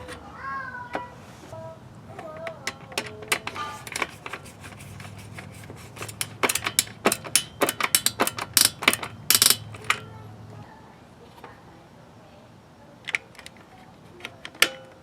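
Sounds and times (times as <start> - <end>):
hand tools clicking on metal box: 2.1 - 10.1, 13.1 - 15.0.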